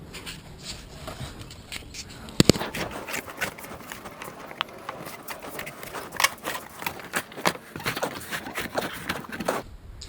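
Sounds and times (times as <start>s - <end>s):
fabric peeling crackling and ripping: 2.4s - 9.6s.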